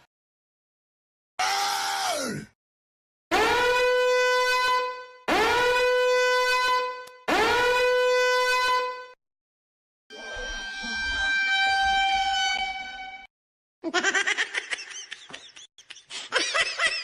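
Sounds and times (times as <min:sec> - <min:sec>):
cartoon horn blast: 0:03.3 - 0:09.2, 0:10.1 - 0:13.3.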